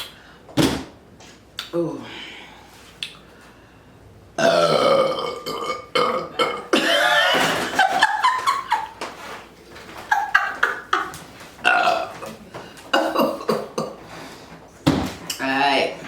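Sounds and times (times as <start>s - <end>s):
woman burping loudly: 4.4s - 7.7s, 11.6s - 14.0s.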